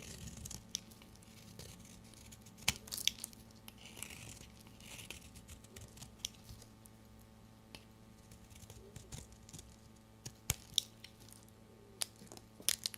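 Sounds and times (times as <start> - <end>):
faint steady hum: 0.0 - 12.9.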